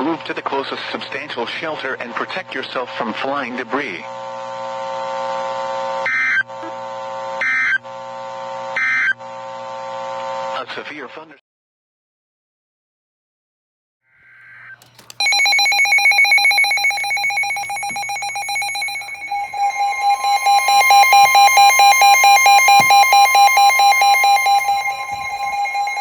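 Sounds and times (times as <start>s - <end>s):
higher alarm tone: 15.2s - 26.0s
pulsing electronic alarm tone: 15.2s - 26.0s.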